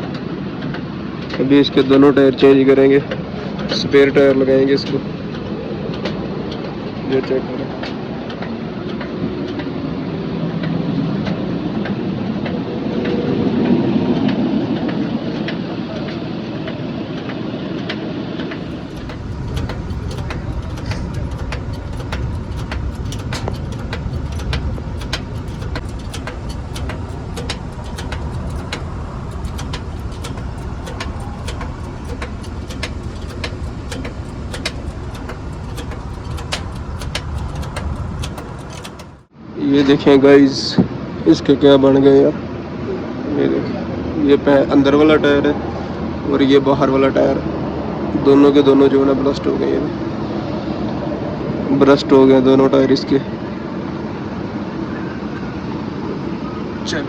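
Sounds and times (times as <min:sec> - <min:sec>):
motor vehicle engine running: 0:18.6 - 0:39.3
sharp clicks: 0:18.6 - 0:39.3.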